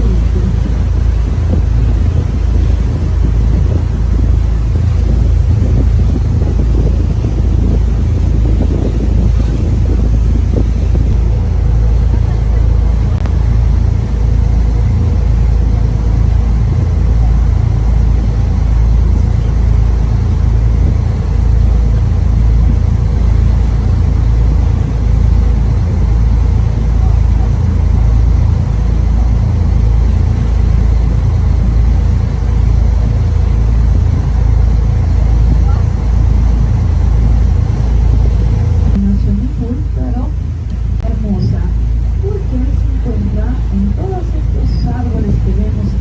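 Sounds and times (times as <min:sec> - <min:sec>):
boat engine rumbling: 0:00.0 - 0:46.0
wind buffeting microphone: 0:00.0 - 0:46.0.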